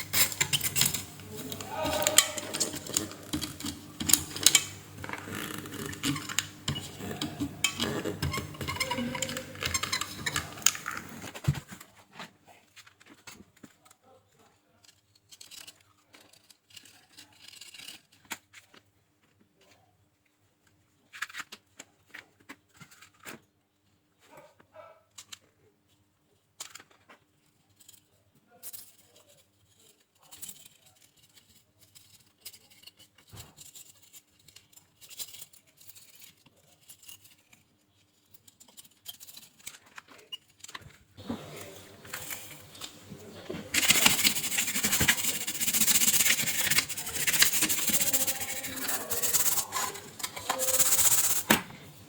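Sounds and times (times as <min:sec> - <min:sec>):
tools and small parts handled: 0:00.0 - 0:11.8, 0:14.8 - 0:18.8, 0:26.6 - 0:51.8.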